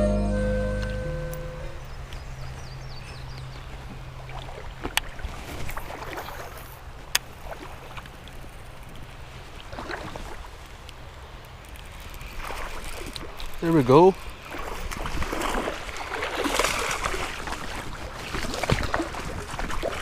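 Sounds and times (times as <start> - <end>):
creek water splashing: 1.7 - 20.0.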